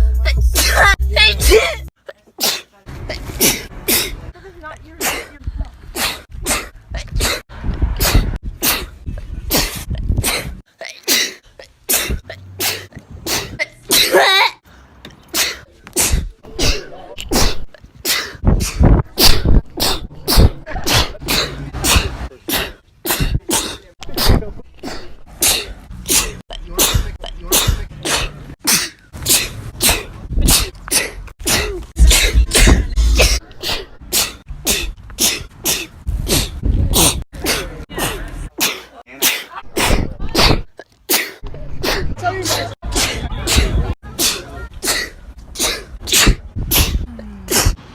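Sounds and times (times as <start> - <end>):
person sneezing: 15.4 - 47.8.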